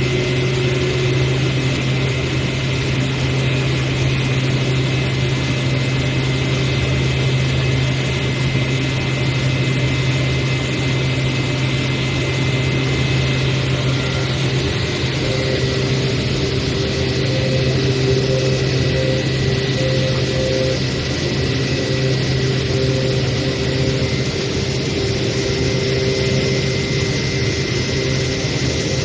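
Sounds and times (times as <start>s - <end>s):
cnc cutting machine running: 0.0s - 29.0s
mid-pitched tone: 13.6s - 29.0s.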